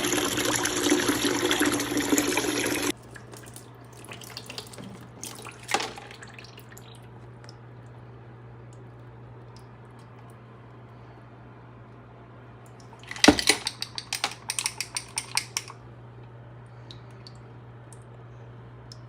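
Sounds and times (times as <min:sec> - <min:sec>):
water gushing from washer drain: 0:00.0 - 0:07.1
water dripping: 0:00.0 - 0:08.0, 0:16.8 - 0:18.1
steady low hum: 0:00.0 - 0:19.0.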